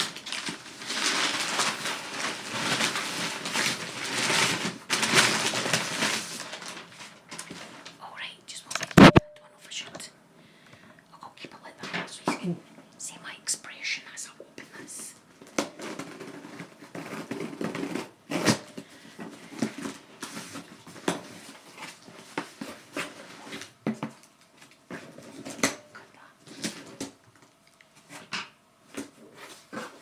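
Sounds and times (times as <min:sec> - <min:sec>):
packaging crinkling and rustling: 0:00.0 - 0:09.2, 0:15.3 - 0:30.0.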